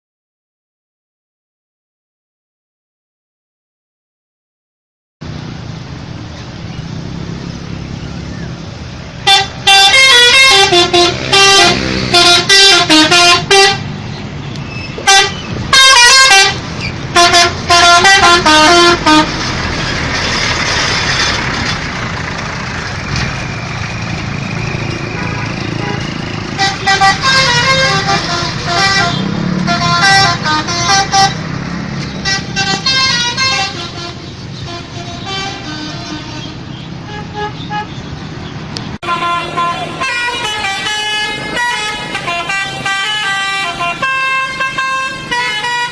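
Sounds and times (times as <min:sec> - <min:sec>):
street noise: 0:05.2 - 0:45.9
multi-tone musical bus horn: 0:09.2 - 0:14.0, 0:14.9 - 0:19.6, 0:24.6 - 0:38.0, 0:39.0 - 0:45.9.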